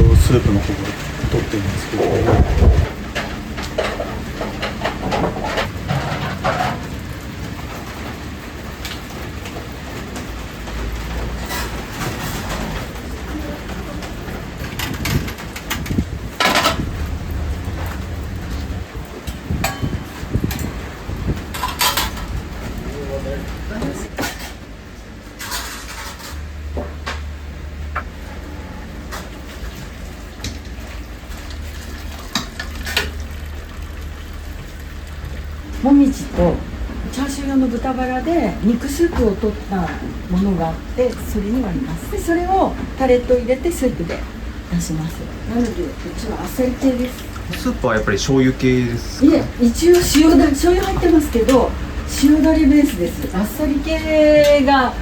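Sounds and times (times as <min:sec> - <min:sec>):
low rumble: 0:00.0 - 0:03.6, 0:14.8 - 0:23.7
steady low hum: 0:00.0 - 0:08.8, 0:13.9 - 0:55.0
steady rain: 0:00.0 - 0:25.5, 0:26.4 - 0:55.0
utensils and lids clinking: 0:21.4 - 0:22.5.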